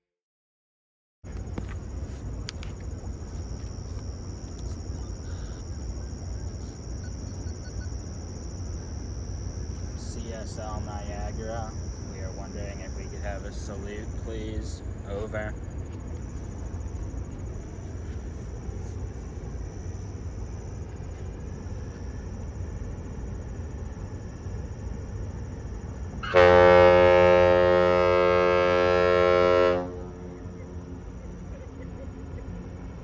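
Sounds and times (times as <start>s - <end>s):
low steady rumble: 1.3s - 33.0s
ship horn blast: 26.2s - 30.6s.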